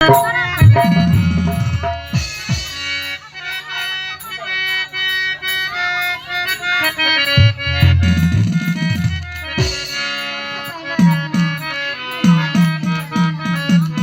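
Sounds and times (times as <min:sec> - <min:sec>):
heavy drum beats: 0:00.0 - 0:03.4, 0:07.3 - 0:10.3
ticking percussion: 0:00.0 - 0:03.7, 0:04.3 - 0:14.0
reedy melody: 0:00.0 - 0:14.0.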